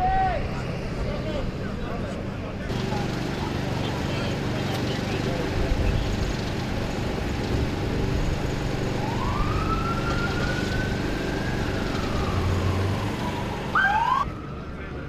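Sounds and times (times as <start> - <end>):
engine and traffic rumble: 0.0 - 15.0
emergency siren wailing: 8.7 - 15.0
siren whoop: 9.0 - 15.0.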